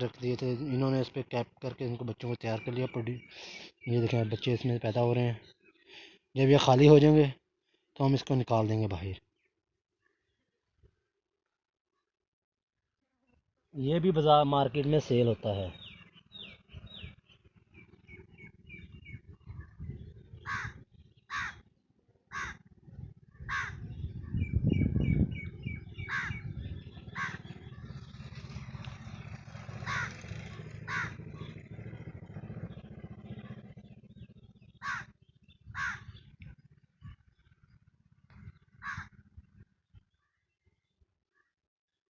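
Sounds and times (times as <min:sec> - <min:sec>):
small birds chirping: 0:00.2 - 0:07.1, 0:14.7 - 0:41.5
crows cawing: 0:20.4 - 0:21.7, 0:22.3 - 0:22.8, 0:23.4 - 0:24.0, 0:26.0 - 0:27.7, 0:28.9 - 0:31.7, 0:34.8 - 0:36.3, 0:38.5 - 0:39.4.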